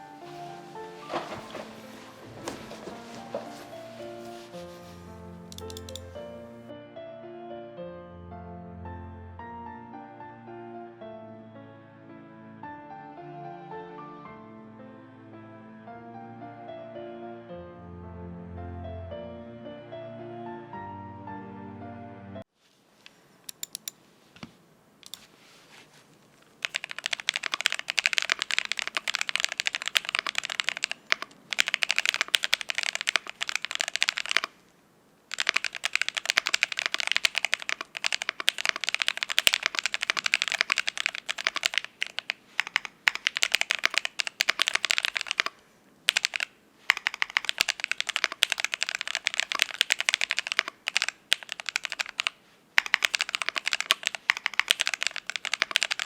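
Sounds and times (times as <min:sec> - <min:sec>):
mechanical keyboard typing: 0:05.5 - 0:06.2, 0:23.5 - 0:24.0, 0:26.6 - 0:34.6, 0:35.3 - 0:56.0.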